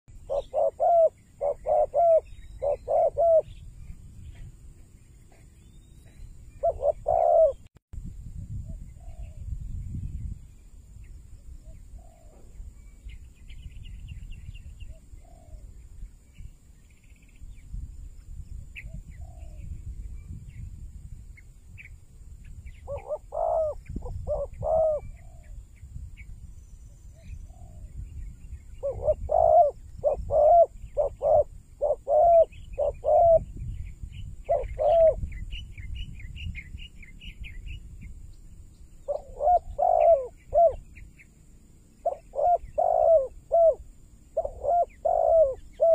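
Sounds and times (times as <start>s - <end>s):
dove cooing: 0.2s - 3.5s, 6.5s - 7.7s, 22.8s - 25.6s, 28.8s - 33.5s, 34.5s - 35.2s, 39.0s - 40.9s, 42.0s - 43.8s, 44.4s - 45.9s
small birds chirping faintly: 8.4s - 45.9s.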